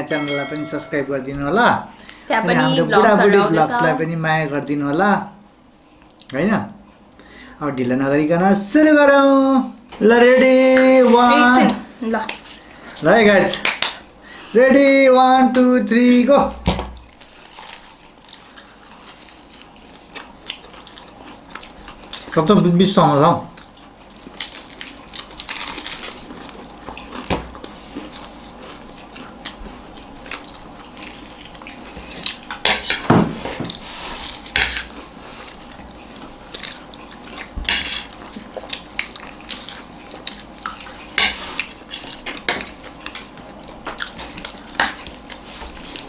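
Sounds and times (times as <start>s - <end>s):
cutlery clinking on plates: 0.0s - 1.2s, 32.5s - 33.7s.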